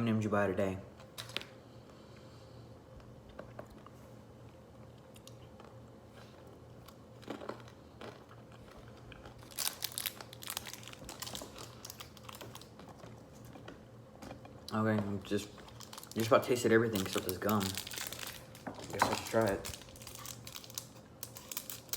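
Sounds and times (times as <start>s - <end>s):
person chewing crunchy candy: 4.9s - 21.9s.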